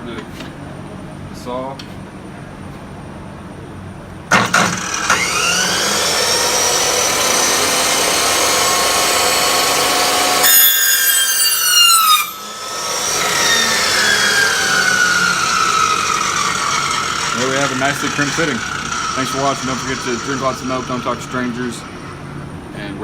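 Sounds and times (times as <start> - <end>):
power saw running: 4.3 - 22.4.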